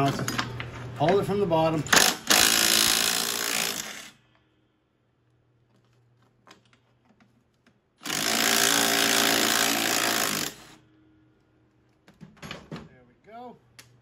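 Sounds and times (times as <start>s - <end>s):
impact wrench burst: 1.9s - 4.2s, 8.0s - 10.8s.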